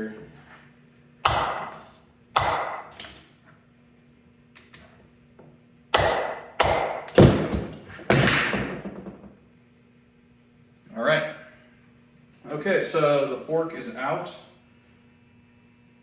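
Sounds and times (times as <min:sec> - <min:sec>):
hammer blows on wooden block: 0:01.2 - 0:01.8, 0:02.4 - 0:02.9, 0:06.0 - 0:08.8.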